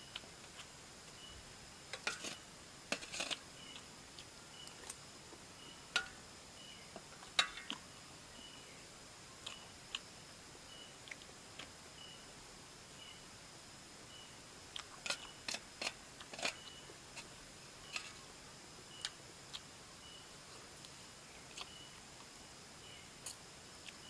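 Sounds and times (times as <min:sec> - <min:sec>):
utensils clicking and scraping bowl: 0:01.9 - 0:03.9, 0:14.8 - 0:18.2.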